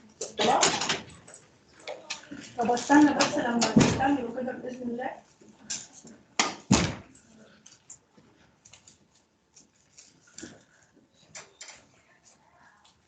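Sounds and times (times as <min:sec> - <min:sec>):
rustling: 0:06.8 - 0:13.0.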